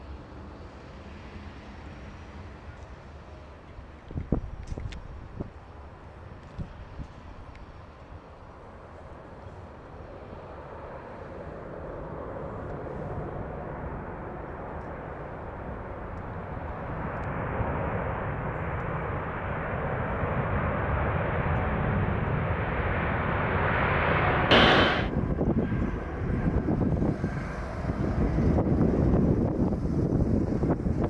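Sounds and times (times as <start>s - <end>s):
jet engines rushing: 24.5s - 25.1s.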